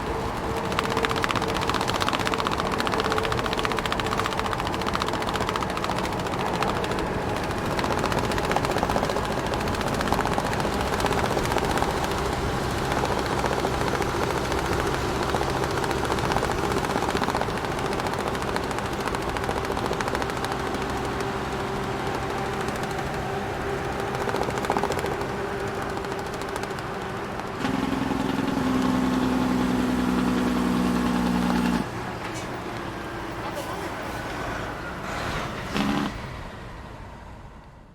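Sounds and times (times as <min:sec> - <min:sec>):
straps flapping and rattling: 0:00.0 - 0:27.7
large truck engine running: 0:00.0 - 0:37.9.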